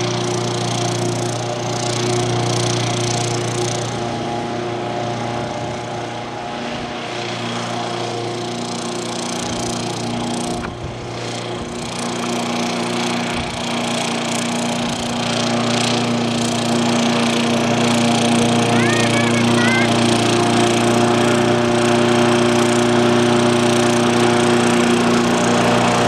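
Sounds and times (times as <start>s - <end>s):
lawnmower engine running: 0.0s - 26.0s.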